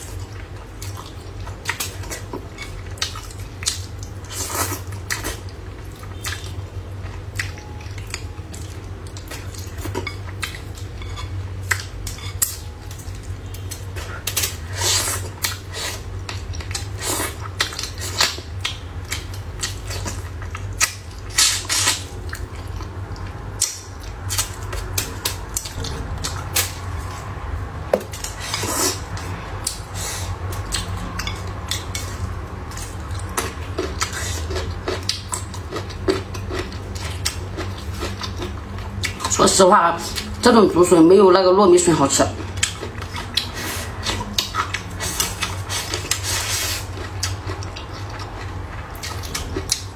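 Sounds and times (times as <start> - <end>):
steady low hum: 0.0 - 49.9
utensils clinking against dishes: 9.3 - 15.0.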